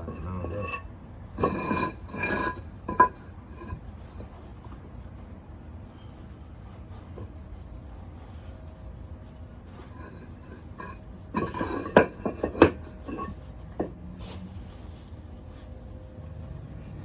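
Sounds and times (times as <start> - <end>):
concrete pavers clinking: 0.0 - 5.1, 9.7 - 17.0.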